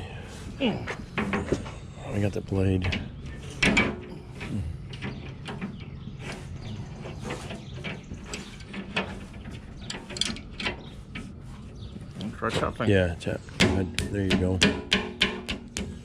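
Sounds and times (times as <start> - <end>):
metal knock: 13.5 - 16.0.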